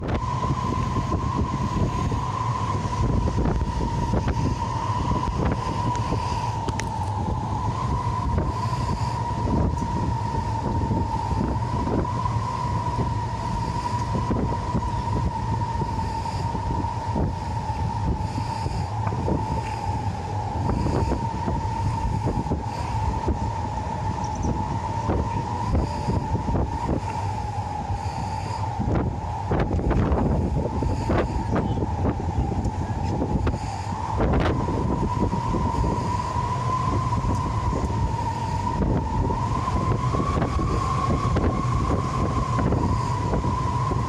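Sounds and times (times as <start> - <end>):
jet engines whining: 0.0 - 44.0
wind buffeting microphone: 0.0 - 44.0.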